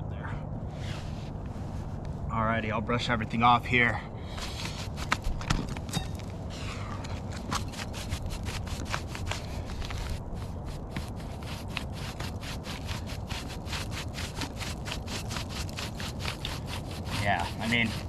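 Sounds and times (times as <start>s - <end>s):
brush sweeping roof shingles: 4.3s - 5.9s, 7.1s - 18.0s.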